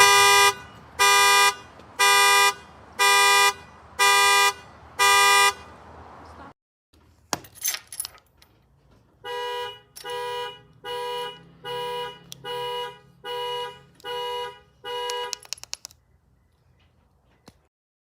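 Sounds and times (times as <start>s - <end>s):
car horn honks: 0.0s - 5.8s, 9.2s - 15.5s
quick clicks: 15.1s - 16.0s.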